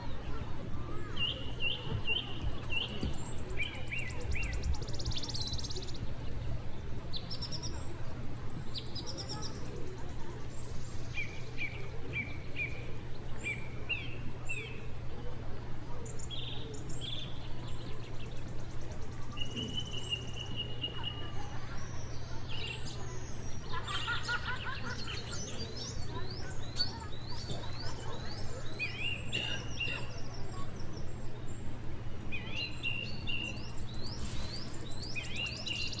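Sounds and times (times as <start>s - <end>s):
steady low hum: 0.0s - 36.0s
birds chirping and singing: 16.1s - 36.0s.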